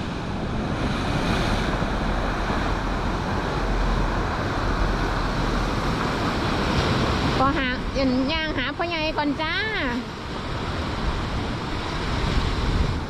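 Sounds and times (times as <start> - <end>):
sea waves breaking: 0.0 - 13.0
wind buffeting microphone: 0.0 - 13.0.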